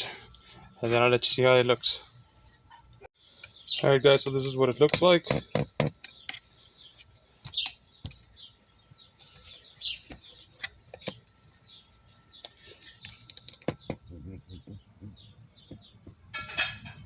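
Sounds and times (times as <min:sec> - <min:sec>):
birds chirping: 0:00.0 - 0:17.0
sharp clicks and knocks: 0:12.4 - 0:14.1.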